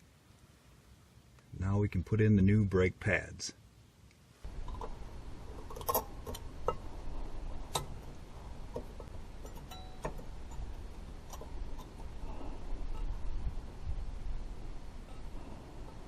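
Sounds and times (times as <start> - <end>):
low rumble: 4.4 - 9.6, 10.2 - 16.0
metallic clicks of brake pads: 5.6 - 6.8, 7.7 - 8.0, 8.7 - 12.2.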